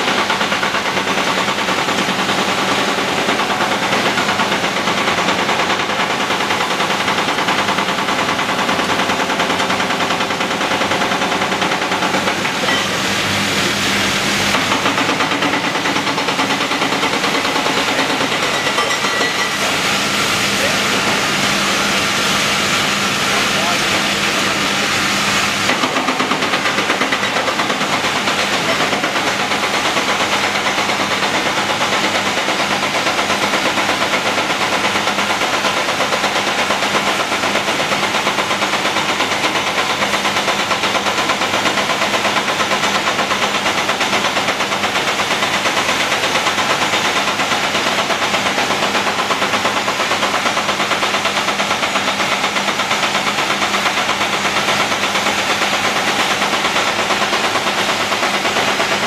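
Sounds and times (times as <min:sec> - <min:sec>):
excavator diesel engine running: 0:00.0 - 0:59.0.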